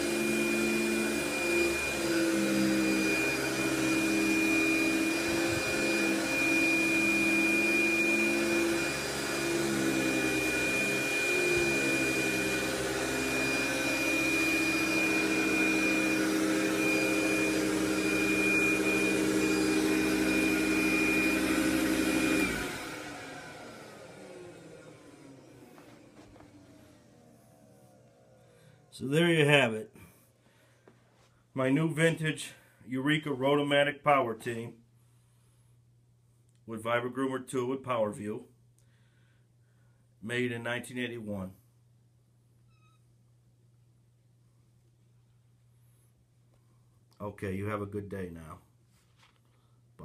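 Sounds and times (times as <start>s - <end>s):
vacuum cleaner whining: 0.0s - 32.3s.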